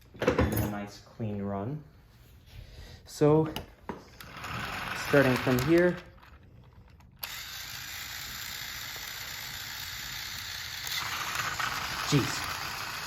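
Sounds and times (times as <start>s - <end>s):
toy train motor running: 4.2s - 13.0s.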